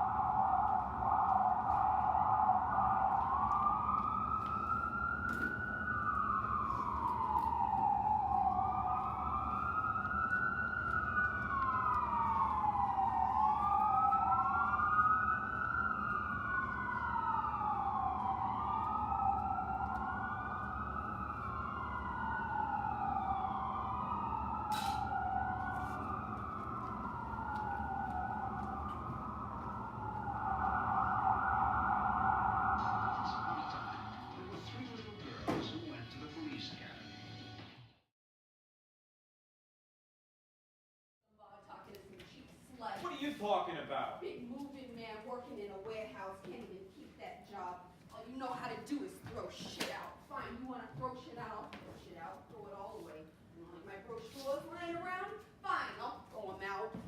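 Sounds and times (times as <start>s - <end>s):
emergency sirens wailing: 0.0s - 37.3s.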